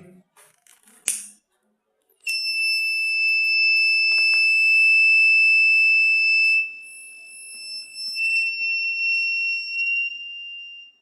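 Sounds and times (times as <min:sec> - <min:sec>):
high-pitched alarm buzzer tone: 0:02.3 - 0:11.0.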